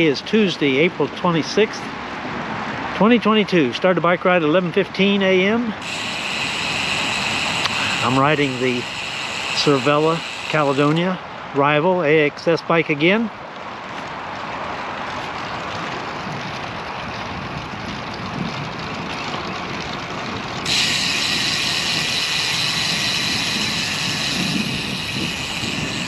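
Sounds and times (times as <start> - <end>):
wind and road rushing noise: 1.8 - 3.2, 20.6 - 26.0
high-pitched buzz: 5.8 - 11.2, 20.6 - 26.0.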